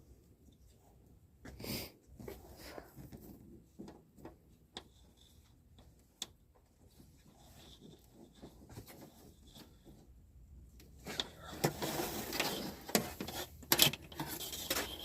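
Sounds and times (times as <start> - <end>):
handling clicks and knocks: 10.8 - 15.0.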